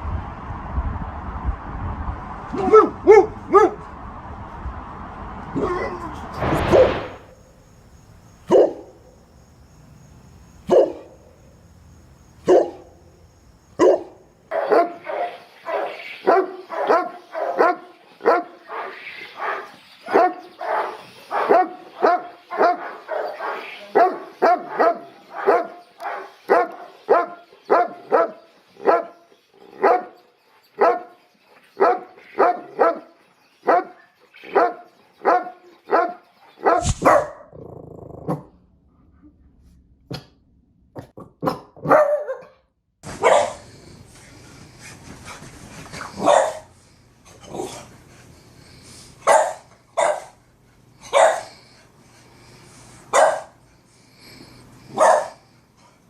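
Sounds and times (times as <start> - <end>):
dog barking: 2.5 - 3.8, 8.5 - 9.0, 10.7 - 11.2, 12.4 - 13.0, 13.8 - 29.2, 29.8 - 30.2, 30.8 - 31.2, 31.8 - 37.5, 41.4 - 42.6, 43.2 - 43.7, 46.2 - 46.7, 49.2 - 50.4, 51.1 - 51.6, 53.1 - 53.6, 54.9 - 55.4
loud sharp noise: 5.6 - 7.8, 36.8 - 37.3.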